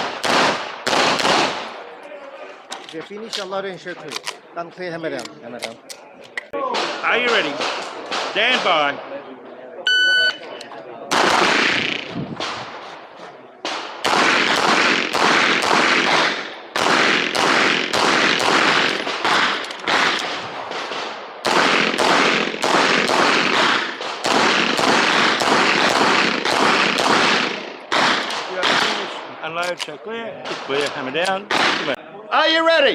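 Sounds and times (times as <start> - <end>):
pistol shots with echo: 0.0 - 1.9, 11.1 - 12.8, 13.6 - 32.0.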